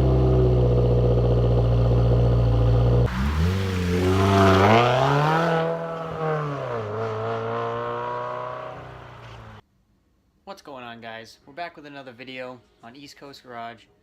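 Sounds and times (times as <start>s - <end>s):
car engine revving: 0.0s - 9.6s.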